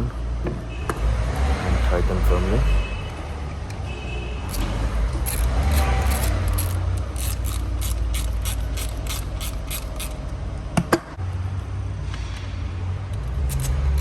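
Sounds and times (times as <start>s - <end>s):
ratchet wrench clicking: 4.5s - 10.4s, 13.1s - 14.0s.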